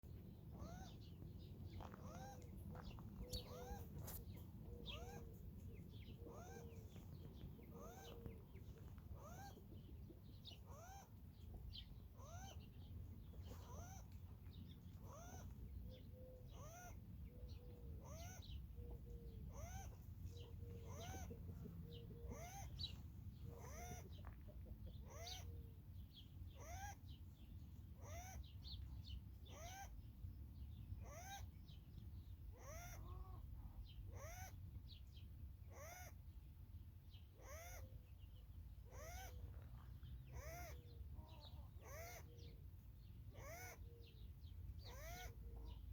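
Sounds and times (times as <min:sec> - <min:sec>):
rabbit wheezing squeaks: 0:00.6 - 0:01.0, 0:01.9 - 0:02.4, 0:03.2 - 0:05.3, 0:06.2 - 0:06.9, 0:07.7 - 0:08.2, 0:09.2 - 0:09.6, 0:10.6 - 0:11.1, 0:12.2 - 0:12.6, 0:13.4 - 0:14.1, 0:15.0 - 0:15.6, 0:16.5 - 0:17.0, 0:18.0 - 0:18.5, 0:19.5 - 0:21.4, 0:22.2 - 0:24.2, 0:25.0 - 0:25.5, 0:26.6 - 0:27.0, 0:28.0 - 0:28.4, 0:29.5 - 0:30.0, 0:31.0 - 0:31.5, 0:32.6 - 0:33.4, 0:34.1 - 0:34.6, 0:35.7 - 0:36.2, 0:37.4 - 0:37.9, 0:38.9 - 0:39.6, 0:40.4 - 0:42.5, 0:43.3 - 0:43.9, 0:44.8 - 0:45.8.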